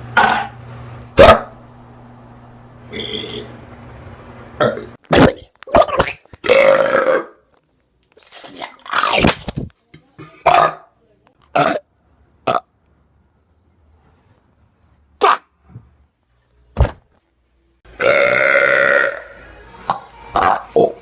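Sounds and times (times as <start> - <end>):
man belching loudly: 0.2 - 0.6, 2.9 - 3.6, 4.6 - 7.4, 10.2 - 10.9, 11.5 - 11.8, 18.0 - 19.4.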